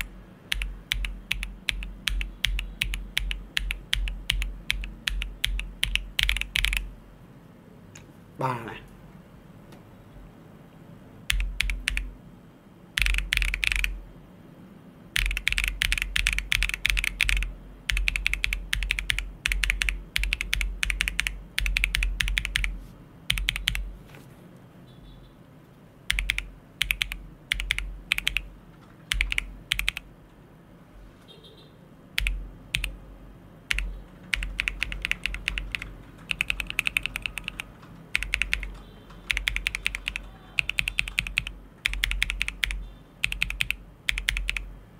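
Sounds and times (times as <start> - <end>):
typing on mechanical keyboard: 0.0 - 6.9, 11.3 - 12.1, 13.0 - 14.0, 15.2 - 23.9, 26.1 - 30.1, 32.2 - 33.0, 33.7 - 44.7.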